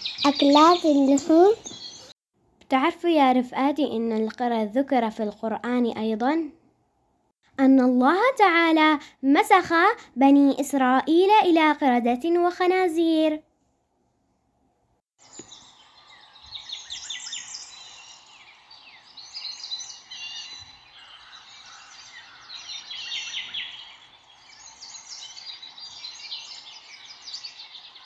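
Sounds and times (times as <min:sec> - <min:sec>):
small birds chirping: 0:00.0 - 0:02.2, 0:15.2 - 0:28.0.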